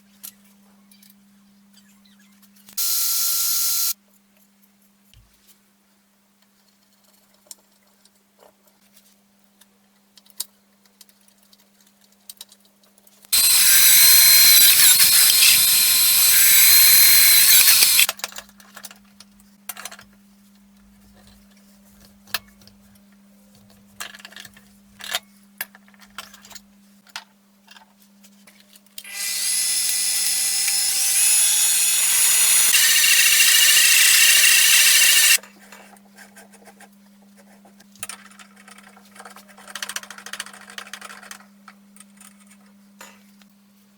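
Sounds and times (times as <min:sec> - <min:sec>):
angle grinder grinding steel: 0:13.4 - 0:18.1, 0:29.1 - 0:35.4.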